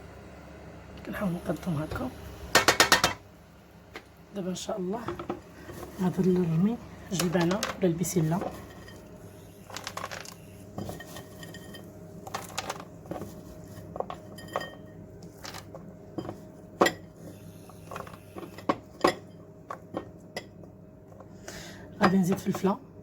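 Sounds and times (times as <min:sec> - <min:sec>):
spoon knocking on a pan: 0:02.6 - 0:03.2.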